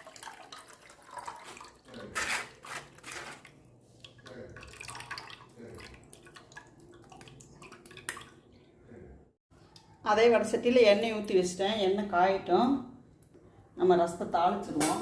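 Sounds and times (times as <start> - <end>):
liquid splashing into a vessel: 0.0 - 8.7.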